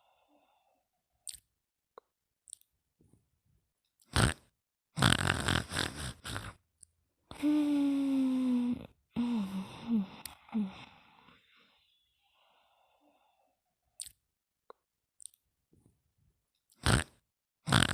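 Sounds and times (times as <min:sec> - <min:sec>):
slow snoring: 0:04.1 - 0:06.6, 0:16.8 - 0:17.9.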